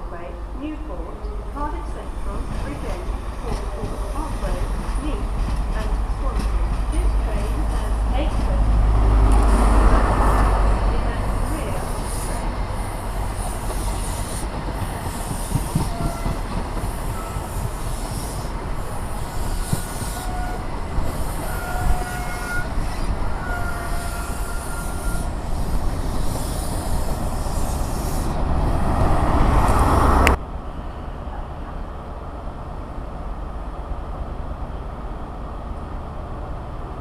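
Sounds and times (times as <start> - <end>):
station background noise: 0.0 - 37.0
train rumbling: 0.0 - 37.0
train wheel squeals: 11.7 - 28.4.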